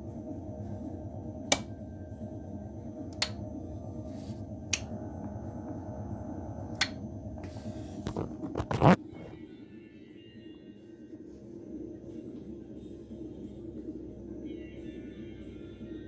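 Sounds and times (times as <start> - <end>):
steady low hum: 0.0 - 16.0
light switch clicks: 1.5 - 1.7, 3.1 - 3.4, 4.7 - 4.9.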